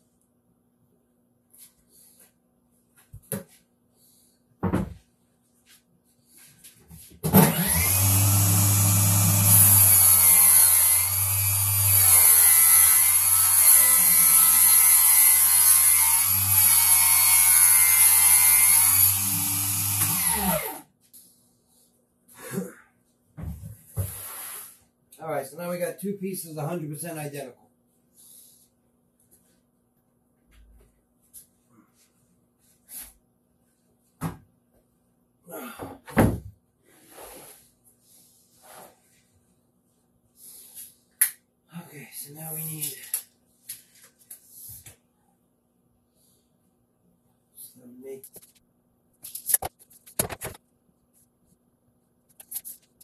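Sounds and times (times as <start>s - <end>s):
electric power saw cutting: 7.4s - 20.8s.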